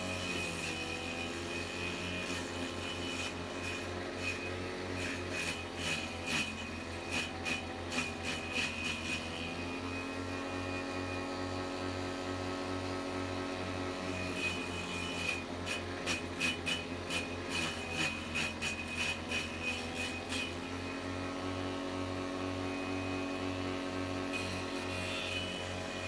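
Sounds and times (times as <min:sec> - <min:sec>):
blade chopping greens: 0:00.0 - 0:09.7, 0:15.2 - 0:20.7.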